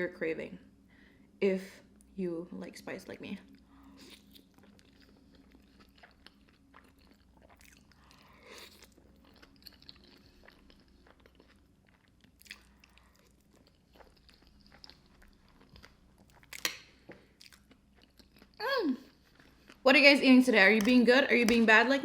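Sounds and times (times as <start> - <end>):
chewing with small crunches: 3.4 - 19.8.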